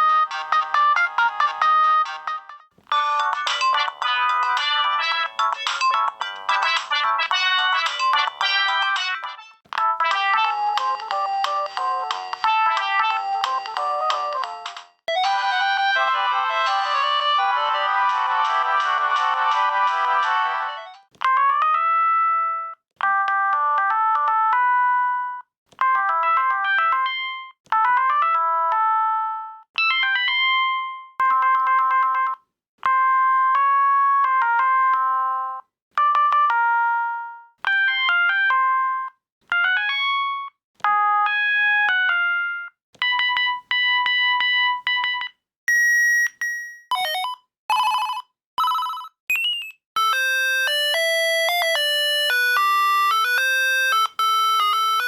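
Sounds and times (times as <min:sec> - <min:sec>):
mobile phone ringtones: 0:00.0 - 0:16.8, 0:41.3 - 0:55.0.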